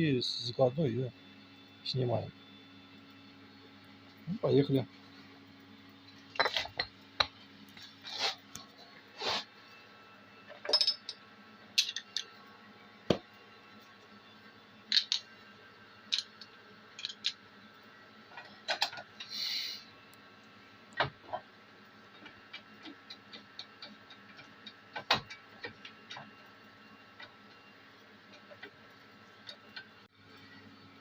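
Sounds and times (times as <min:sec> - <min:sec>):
metallic clicks and clinks: 0:11.8 - 0:12.3, 0:16.1 - 0:17.4
short hisses: 0:19.3 - 0:19.9.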